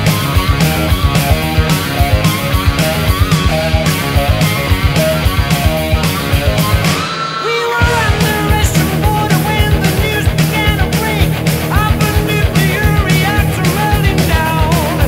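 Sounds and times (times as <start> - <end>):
rock music with distorted guitars: 0.0 - 15.0
person singing: 6.9 - 15.0.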